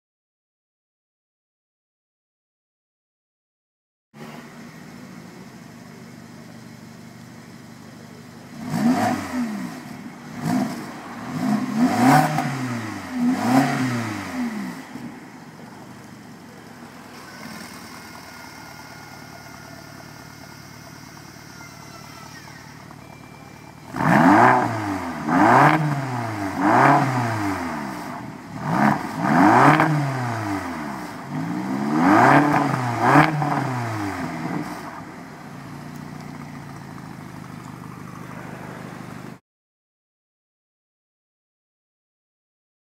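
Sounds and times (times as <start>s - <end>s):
car engine idling: 4.2s - 39.4s
engine revving: 8.3s - 39.4s.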